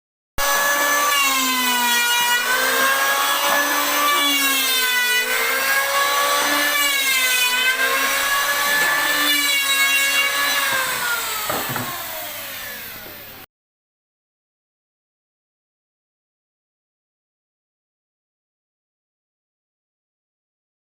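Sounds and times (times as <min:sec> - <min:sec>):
power tool cutting wood: 0:00.4 - 0:13.5.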